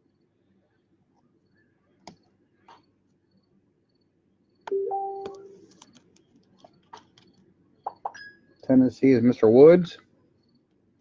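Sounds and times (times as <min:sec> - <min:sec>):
short steady tone: 0:04.7 - 0:05.6.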